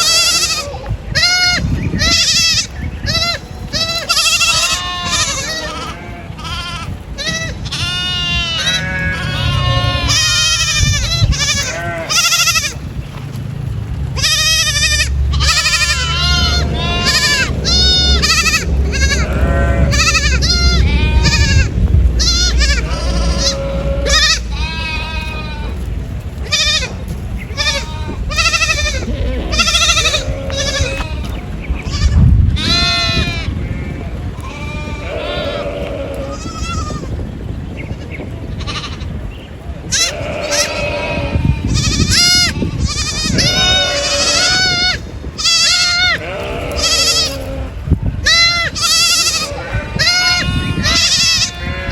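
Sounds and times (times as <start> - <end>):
goats bleating: 0.0 - 12.9, 14.0 - 37.2, 37.9 - 39.2, 39.8 - 51.9
steady low rumble: 0.0 - 51.9.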